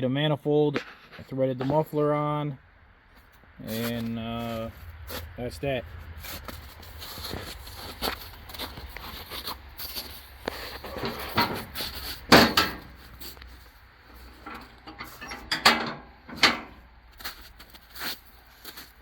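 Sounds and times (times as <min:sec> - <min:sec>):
knocks and clunks of objects: 0:10.7 - 0:13.4, 0:14.2 - 0:16.8.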